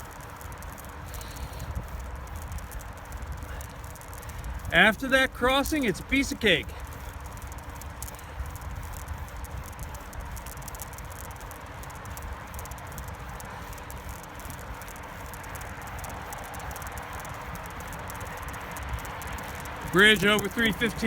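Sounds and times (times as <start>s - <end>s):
fast fine high ticking: 0.0s - 21.0s
highway traffic rumble and hiss: 0.0s - 21.0s.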